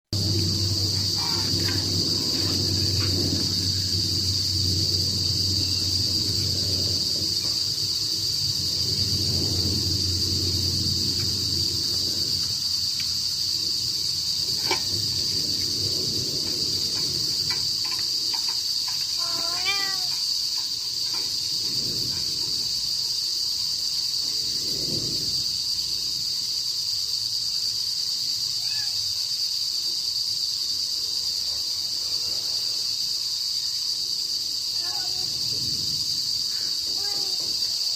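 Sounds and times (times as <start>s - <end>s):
low rumble: 0.1s - 18.6s
crickets chirping: 0.1s - 37.9s.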